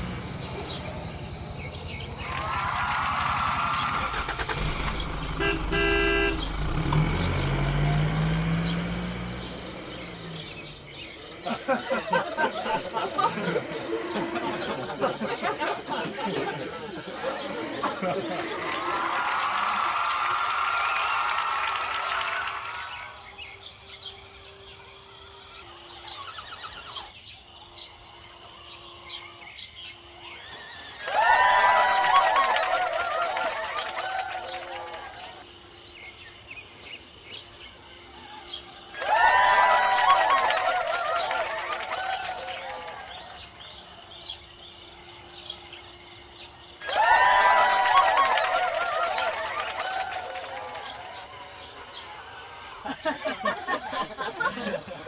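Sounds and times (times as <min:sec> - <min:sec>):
low engine rumble: 0:00.0 - 0:18.4
birds chirping: 0:00.0 - 0:55.0
voices chattering: 0:00.0 - 0:55.0
vehicle horn toot: 0:05.2 - 0:06.7.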